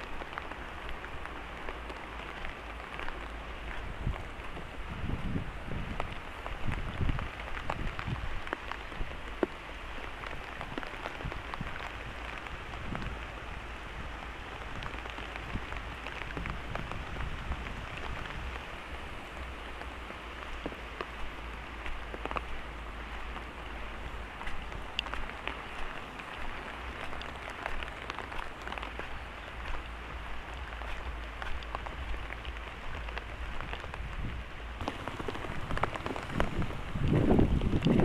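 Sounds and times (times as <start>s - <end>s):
steady rain falling: 0.0s - 38.0s
low bumps: 14.3s - 38.0s.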